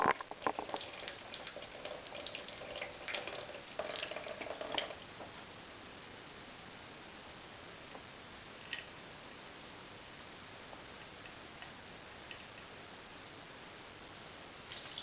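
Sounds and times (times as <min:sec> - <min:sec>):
faint steady hiss: 0:00.0 - 0:15.0
water drips and splashes: 0:00.2 - 0:05.0, 0:14.7 - 0:15.0.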